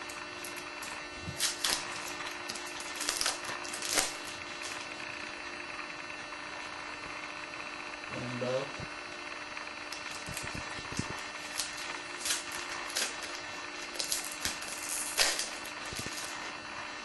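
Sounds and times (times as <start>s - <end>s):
electrical hum: 0.0s - 17.0s
trading cards rustling and sliding: 9.9s - 16.7s.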